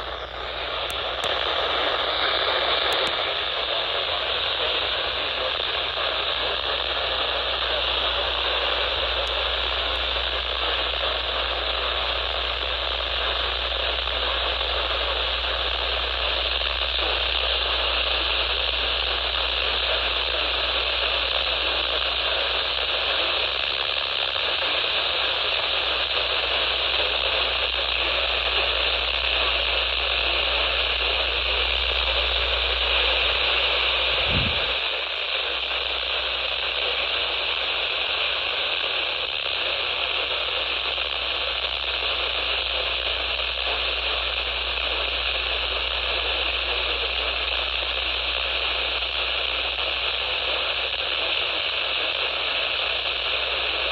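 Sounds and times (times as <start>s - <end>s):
radio static hiss: 0.0s - 53.9s
low hum: 31.0s - 34.9s.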